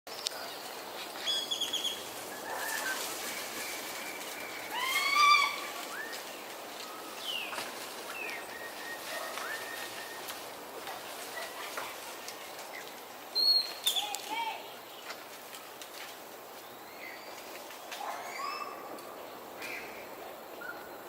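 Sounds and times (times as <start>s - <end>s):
animal call rising in pitch: 4.7s - 5.7s.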